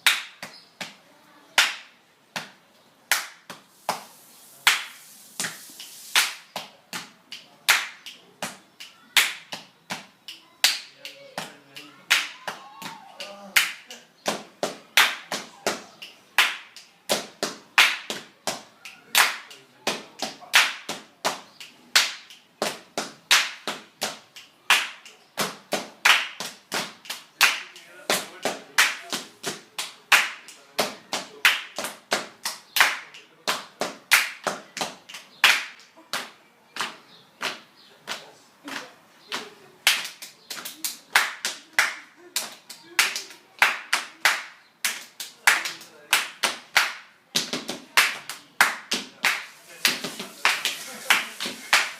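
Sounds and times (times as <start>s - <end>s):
hand claps and body slaps: 0.0s - 51.9s.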